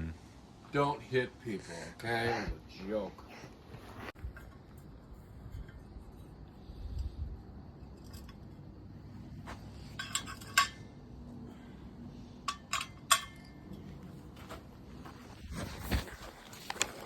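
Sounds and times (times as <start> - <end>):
metal tapping on metal: 9.9 - 11.0, 12.4 - 13.9.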